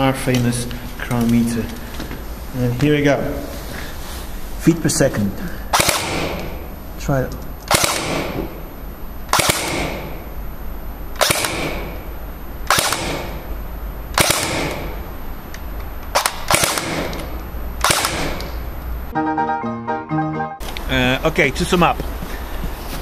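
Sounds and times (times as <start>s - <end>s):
airsoft gun shots: 5.7s - 6.6s, 7.7s - 8.6s, 9.3s - 10.2s, 11.2s - 12.0s, 12.7s - 13.4s, 14.2s - 15.0s, 16.1s - 18.6s.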